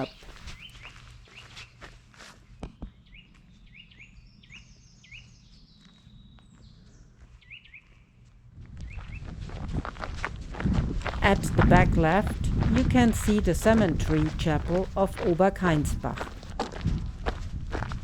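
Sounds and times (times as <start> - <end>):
small birds chirping: 0.0 - 1.5
faint low outdoor rumble: 11.1 - 16.5.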